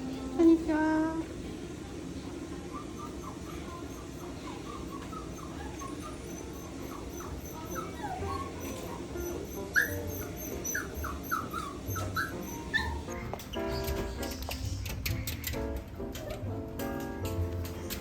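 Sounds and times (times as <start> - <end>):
small dog whining: 2.6 - 14.4.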